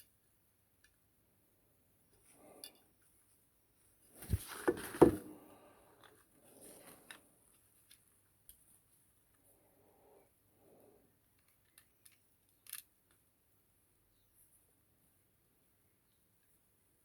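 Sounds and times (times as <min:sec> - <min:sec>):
soft rustling: 0:03.2 - 0:05.4.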